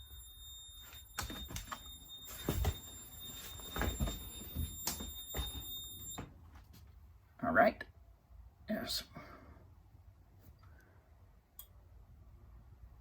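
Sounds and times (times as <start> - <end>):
high-pitched piezo buzzer tone: 0.0 - 6.3
knocks and rustles of handling: 1.1 - 7.0.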